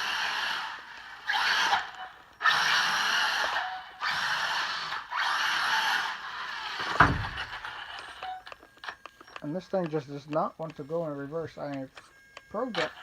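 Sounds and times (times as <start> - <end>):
rc truck motor running: 0.0 - 13.0
loud thump: 6.8 - 7.7.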